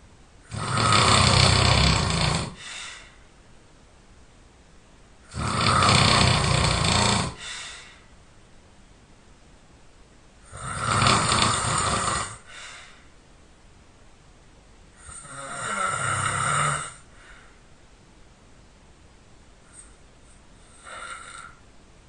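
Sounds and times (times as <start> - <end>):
person snoring loudly: 0.5 - 2.8, 5.3 - 7.6, 10.5 - 12.5, 15.0 - 17.1, 20.6 - 21.6.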